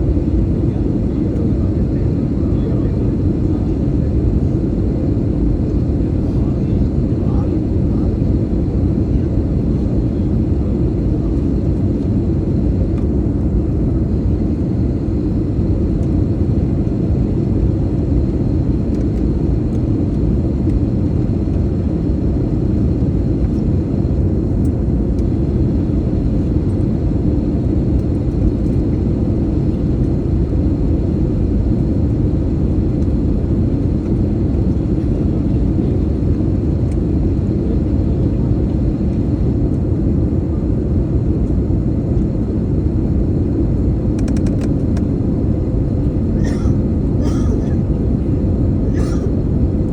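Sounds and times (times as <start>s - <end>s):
airliner cabin rumble: 0.0s - 49.9s.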